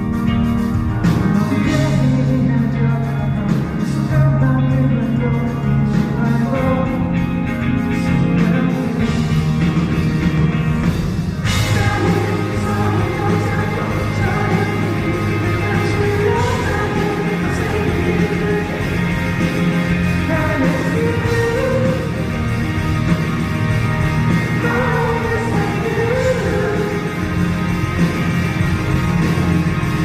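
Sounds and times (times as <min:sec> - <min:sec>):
live rock band: 0:00.0 - 0:30.0
person singing: 0:01.0 - 0:09.4, 0:11.5 - 0:22.6, 0:24.2 - 0:27.7.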